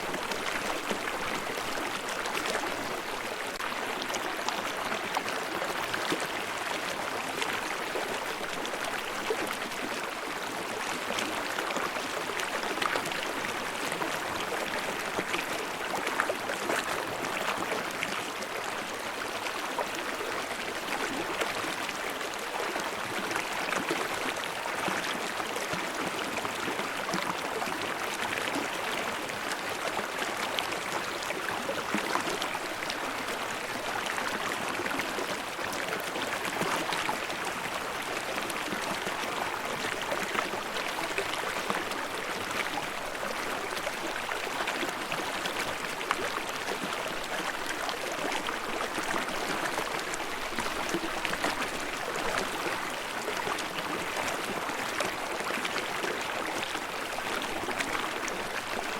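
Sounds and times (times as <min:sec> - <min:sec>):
stream water babbling: 0:00.0 - 0:58.9.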